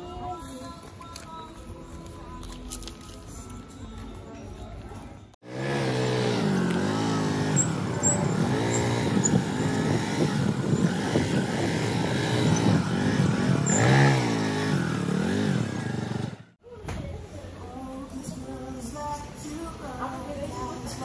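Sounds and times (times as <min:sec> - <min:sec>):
vehicle engine revving: 0:05.4 - 0:16.6.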